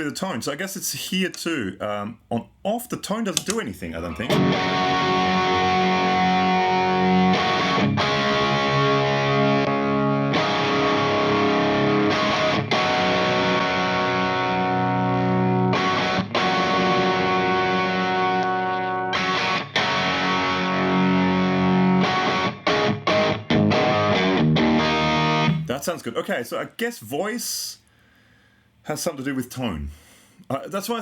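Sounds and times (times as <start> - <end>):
distorted electric guitar chords: 4.2 - 25.7.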